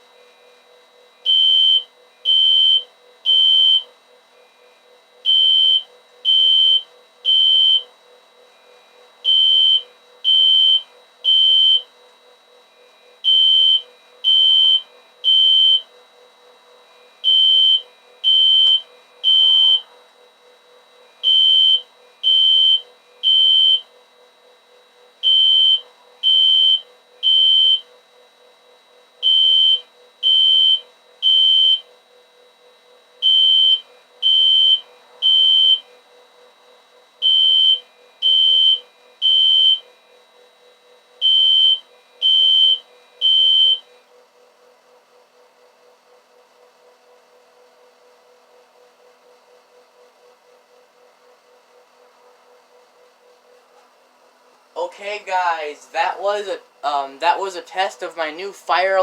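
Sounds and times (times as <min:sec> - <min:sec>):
fire alarm horn beeps: 0:01.2 - 0:03.9, 0:05.2 - 0:07.9, 0:09.2 - 0:11.9, 0:13.2 - 0:15.9, 0:17.2 - 0:19.8, 0:21.2 - 0:23.9, 0:25.2 - 0:27.9, 0:29.2 - 0:31.9, 0:33.2 - 0:35.9, 0:37.2 - 0:40.0, 0:40.7 - 0:44.0.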